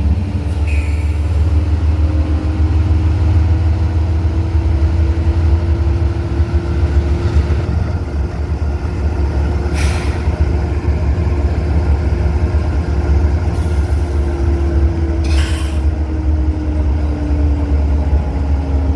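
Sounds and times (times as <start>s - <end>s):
short air hisses: 9.7s - 10.4s, 15.2s - 15.9s.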